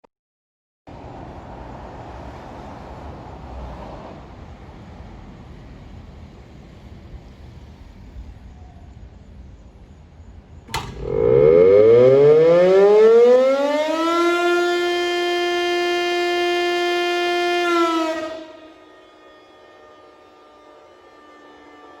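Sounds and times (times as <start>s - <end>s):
low rumble and hiss: 1.0s - 11.0s
sharp click: 10.7s - 11.2s
motor siren: 10.7s - 22.0s.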